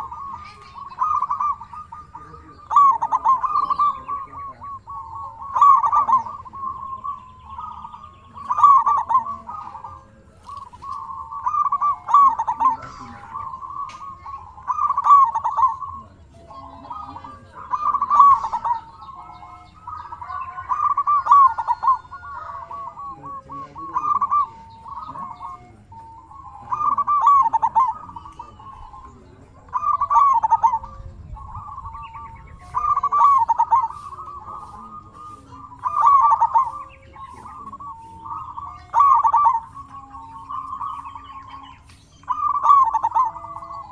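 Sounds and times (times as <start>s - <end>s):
dove cooing: 0.0s - 43.9s.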